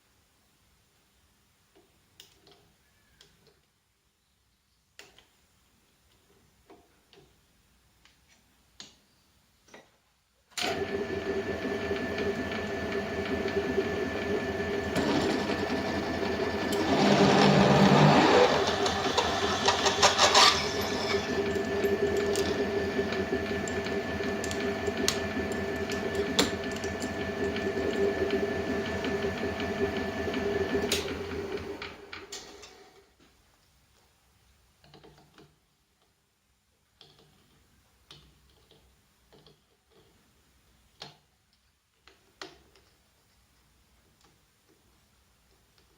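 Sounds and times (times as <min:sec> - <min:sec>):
belt sander motor humming: 0:10.7 - 0:32.2.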